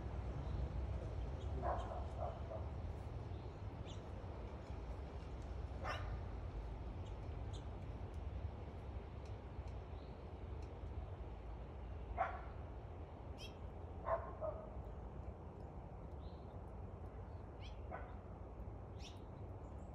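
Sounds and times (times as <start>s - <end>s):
dog barking: 1.6s - 2.7s, 5.8s - 6.1s, 12.2s - 12.5s, 14.1s - 14.7s.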